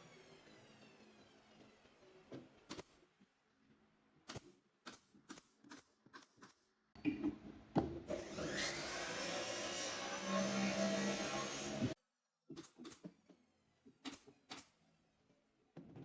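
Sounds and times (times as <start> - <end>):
electric power tool humming: 8.1 - 12.0.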